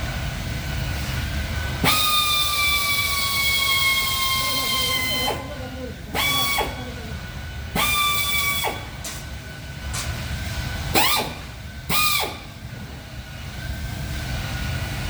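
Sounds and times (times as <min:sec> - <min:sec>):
power tool whining: 0:01.8 - 0:07.0, 0:07.7 - 0:09.0, 0:10.9 - 0:12.6.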